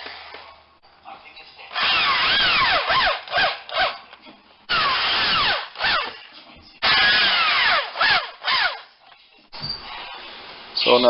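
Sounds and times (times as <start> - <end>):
power drill motor whine: 1.7 - 4.0, 4.7 - 6.2, 6.8 - 8.8.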